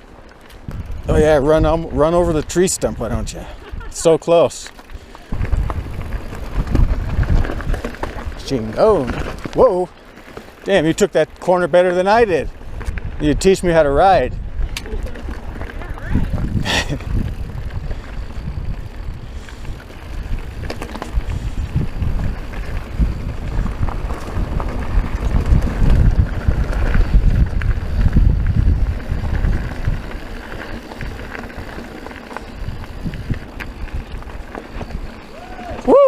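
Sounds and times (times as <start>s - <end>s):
mountain bike rolling on dirt trail: 0.0s - 36.0s
wind buffeting microphone: 0.6s - 3.9s, 4.8s - 9.9s, 12.1s - 36.0s
tyres clicking and rattling on rocks: 4.5s - 12.0s, 14.7s - 28.2s, 28.9s - 36.0s.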